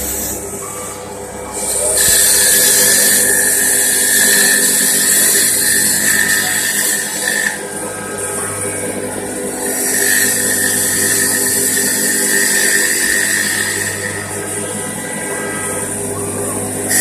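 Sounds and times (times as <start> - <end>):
hissing cutting noise: 0.0 - 17.0
lathe machine hum: 0.0 - 17.0
thin high whine: 0.0 - 17.0.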